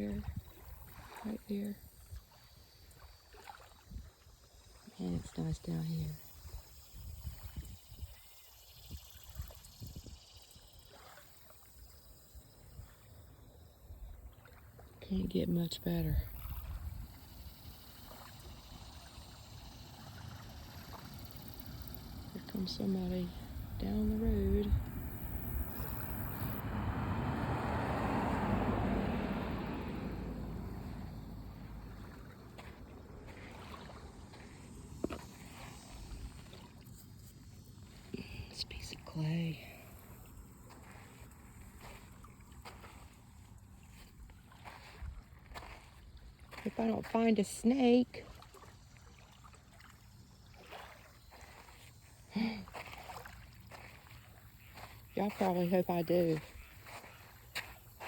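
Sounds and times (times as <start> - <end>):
small waves lapping: 0.0 - 58.0
vehicle driving past: 25.0 - 34.9.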